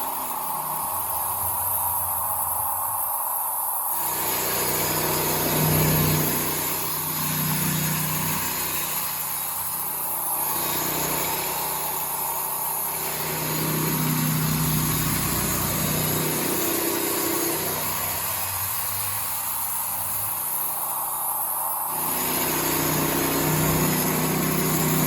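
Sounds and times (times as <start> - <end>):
engine running: 4.1 - 21.1, 22.0 - 25.0.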